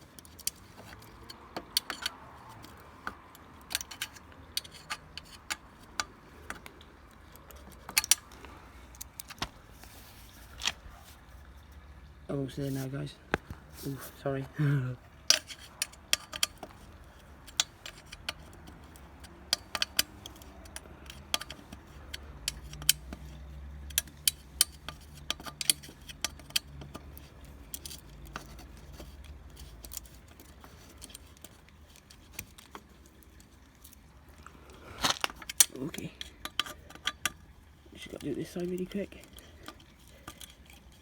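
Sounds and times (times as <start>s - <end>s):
hand tools clinking on metal: 0.2s - 6.7s, 7.4s - 9.2s, 14.6s - 16.8s, 17.4s - 32.2s, 34.8s - 41.0s.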